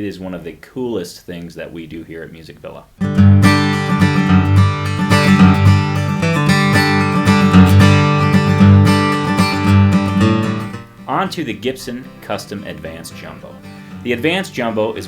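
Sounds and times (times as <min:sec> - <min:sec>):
acoustic guitar strummed and picked: 0:03.0 - 0:15.0.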